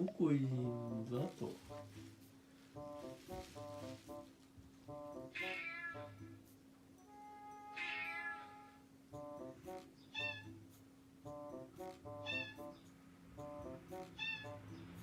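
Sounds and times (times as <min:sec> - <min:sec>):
background music melody: 0:00.0 - 0:15.0
high cat meows: 0:05.4 - 0:06.2, 0:07.7 - 0:08.8.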